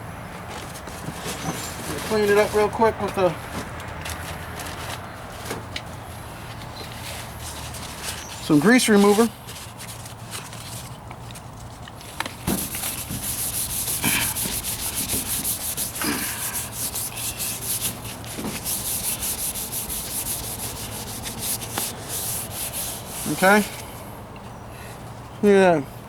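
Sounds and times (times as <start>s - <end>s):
rag rubbing on metal: 12.4s - 23.8s.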